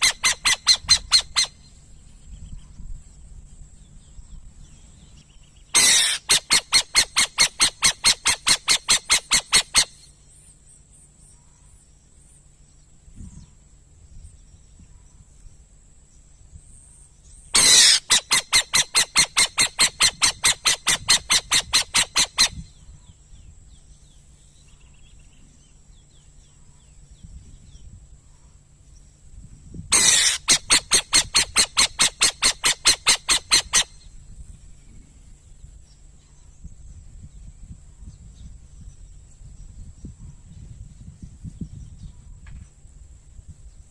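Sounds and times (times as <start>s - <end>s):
owl chattering: 0.0s - 1.8s, 5.7s - 10.1s, 17.6s - 22.9s, 29.9s - 34.2s.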